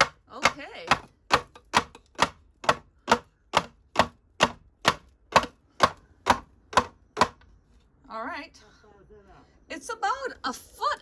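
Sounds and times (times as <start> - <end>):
sharp knocks: 0.0 - 7.4.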